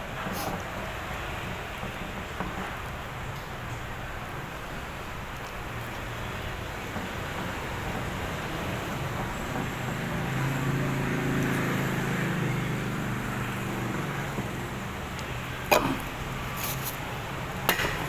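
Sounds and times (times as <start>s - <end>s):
road traffic noise: 0.0s - 18.0s
vehicle engine passing close: 8.0s - 18.0s.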